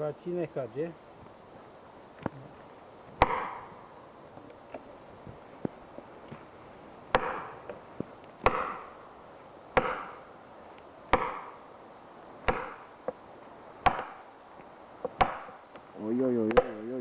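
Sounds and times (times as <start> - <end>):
axe blows on wood: 3.2 - 3.7, 7.1 - 7.6, 8.4 - 9.0, 9.8 - 10.2, 11.1 - 11.6, 12.4 - 12.8.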